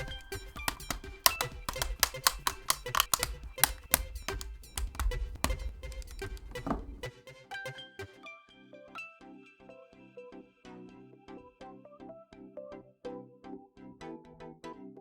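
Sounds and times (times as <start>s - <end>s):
mechanical keyboard keystroke clacks: 0.0s - 7.1s
background music: 0.0s - 15.0s.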